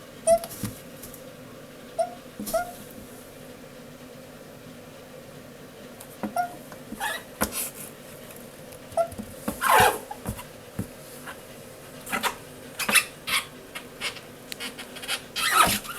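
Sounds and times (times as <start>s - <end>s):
toad calling: 2.0s - 2.7s.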